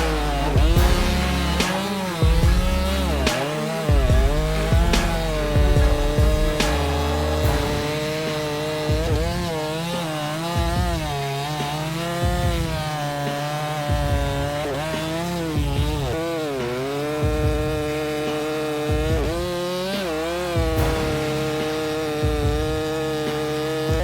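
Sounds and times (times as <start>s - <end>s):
low regular pulse: 0.0s - 9.6s
chainsaw cutting wood: 0.0s - 24.0s.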